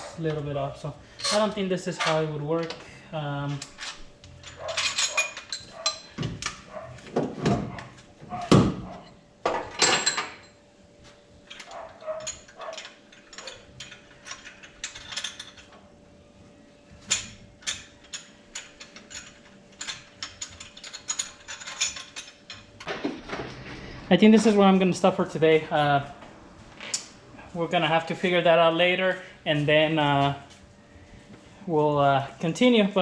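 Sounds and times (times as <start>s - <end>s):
metal clanks and knocks: 3.6s - 10.5s.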